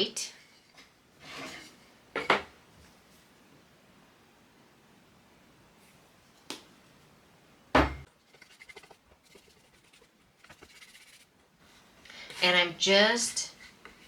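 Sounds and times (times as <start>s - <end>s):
knock on table: 7.8s - 8.0s
paintbrush scratching on plywood: 8.3s - 11.3s.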